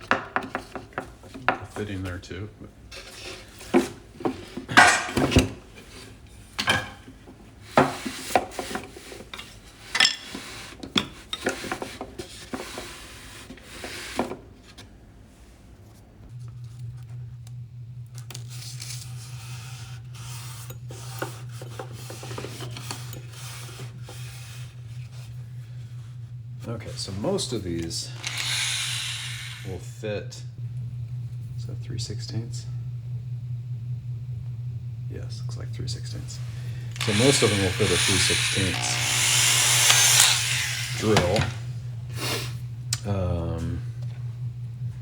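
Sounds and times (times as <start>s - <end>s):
steady low hum: 15.0s - 45.0s.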